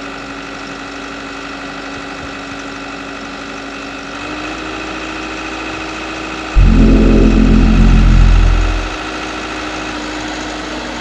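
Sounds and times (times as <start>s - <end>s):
constant whine: 6.6s - 9.0s.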